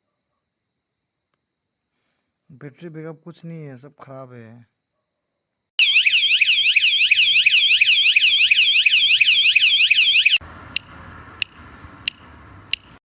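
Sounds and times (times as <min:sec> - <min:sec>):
alarm siren warbling: 0:05.8 - 0:10.4.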